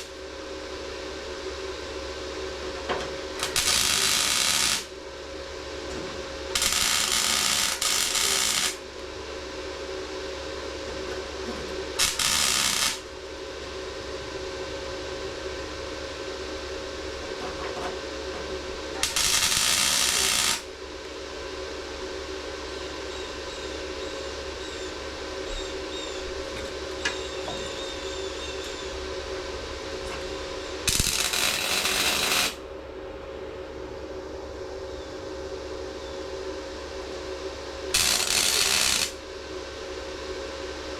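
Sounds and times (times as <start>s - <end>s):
steady hum: 0.0s - 40.9s
welding arc crackling and hissing: 3.3s - 5.0s, 6.5s - 9.0s, 12.0s - 13.2s, 18.9s - 20.7s, 30.0s - 32.6s, 37.9s - 39.2s.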